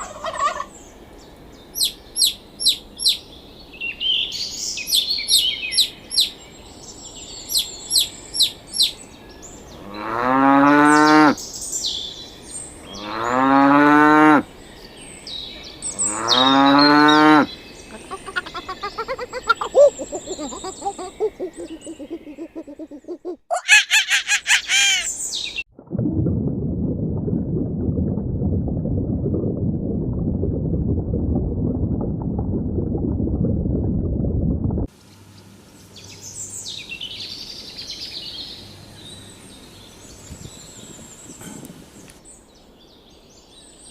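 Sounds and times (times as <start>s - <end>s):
bird chirps: 1.7s - 9.7s, 14.8s - 25.6s
cow mooing: 16.0s - 17.5s
animal calls: 17.9s - 25.2s
low rough noise: 25.8s - 37.5s.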